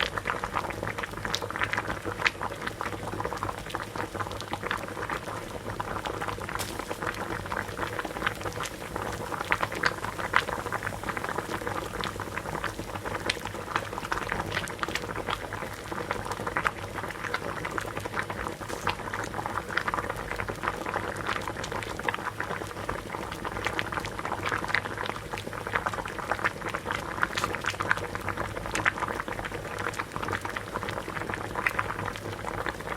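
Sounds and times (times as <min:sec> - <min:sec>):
water boiling and bubbling: 0:00.0 - 0:32.9
steady low hum: 0:06.5 - 0:14.7.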